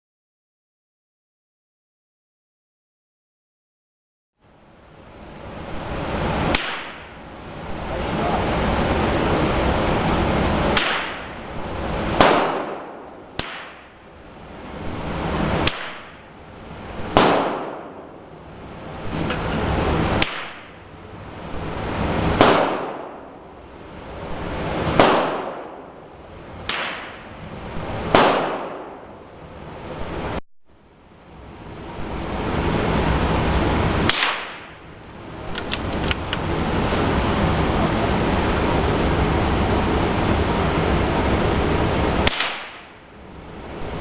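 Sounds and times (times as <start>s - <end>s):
gunshots with echo: 10.8s - 11.4s, 12.2s - 14.0s, 17.1s - 18.2s, 22.4s - 23.4s, 24.9s - 26.0s, 26.7s - 27.4s, 28.1s - 29.2s, 42.2s - 43.0s
wind noise on microphone: 31.5s - 44.0s.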